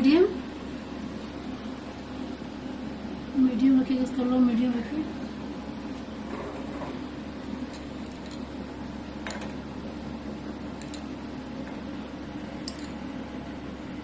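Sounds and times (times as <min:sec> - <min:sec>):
steady low hum: 0:00.0 - 0:14.0
utensils clinking: 0:12.6 - 0:13.0.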